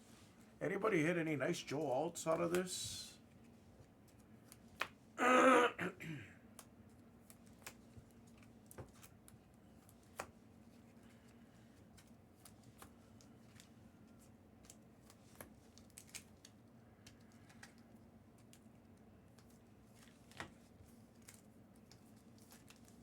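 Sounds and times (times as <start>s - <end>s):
trading cards clicking and snapping: 14.6s - 18.7s.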